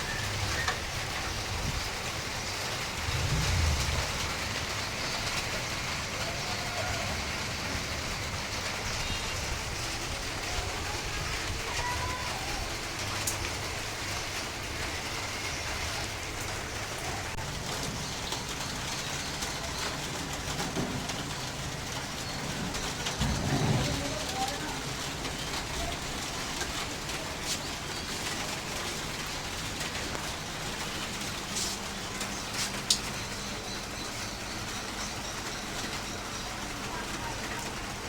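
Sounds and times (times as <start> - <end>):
steady rain: 0.0 - 38.0
low rumble: 2.7 - 5.6.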